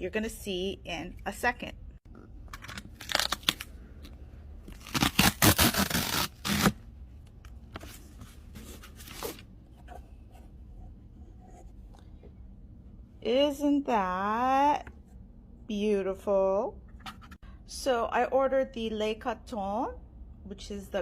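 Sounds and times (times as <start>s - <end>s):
packaging tearing and rustling: 2.5s - 3.8s, 4.7s - 6.8s.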